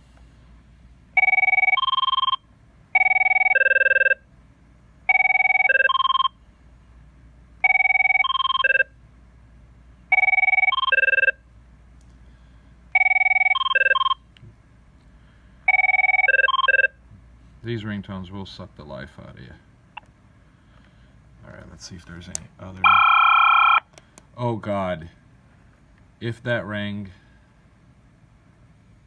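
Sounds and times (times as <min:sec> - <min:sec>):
desk phone electronic ringtone: 0:01.2 - 0:04.3, 0:05.1 - 0:06.4, 0:07.6 - 0:09.0, 0:10.1 - 0:11.4, 0:12.9 - 0:14.2, 0:15.7 - 0:17.0, 0:22.8 - 0:23.9.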